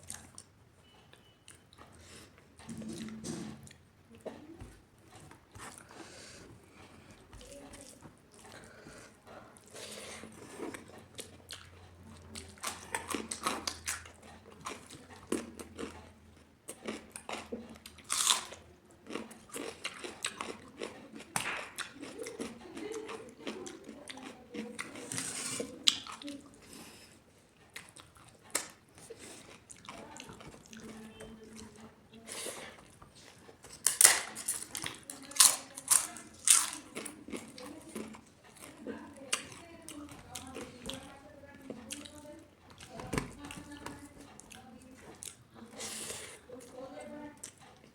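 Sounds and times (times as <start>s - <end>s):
person chewing and biting crunchily: 5.2s - 16.0s, 16.7s - 31.1s, 32.4s - 41.1s.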